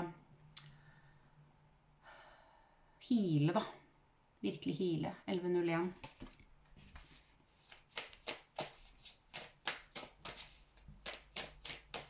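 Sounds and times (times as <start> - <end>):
cards shuffled by hand: 5.9 - 12.0.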